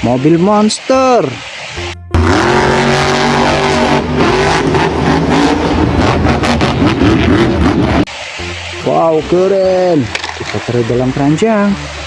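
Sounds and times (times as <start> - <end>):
big engine revving: 1.8 - 8.1.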